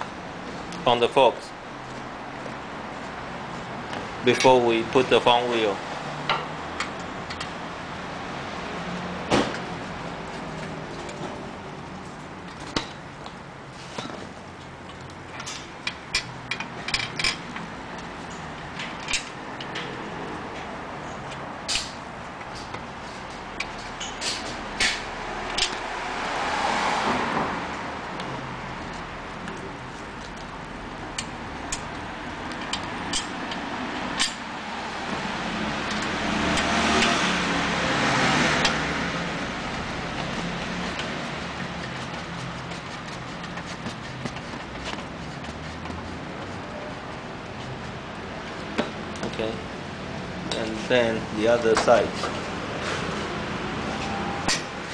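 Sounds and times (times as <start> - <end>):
metal tools clicking and tapping: 6.2 - 7.6, 14.8 - 22.9, 23.6 - 25.8, 31.1 - 34.4.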